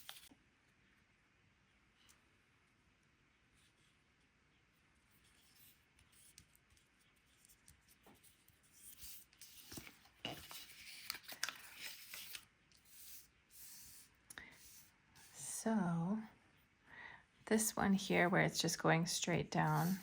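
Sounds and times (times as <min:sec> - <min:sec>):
cardstock rustling and sliding: 0:08.9 - 0:12.4.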